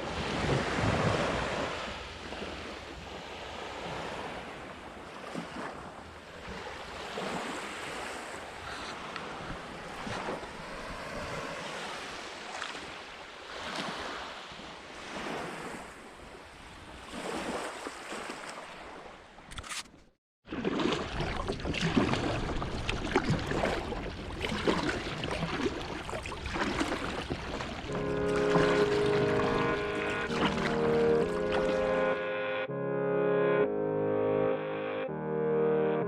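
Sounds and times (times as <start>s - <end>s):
water splashes: 0.0s - 15.9s, 20.5s - 32.2s
sea water lapping: 0.0s - 19.4s, 20.5s - 32.3s.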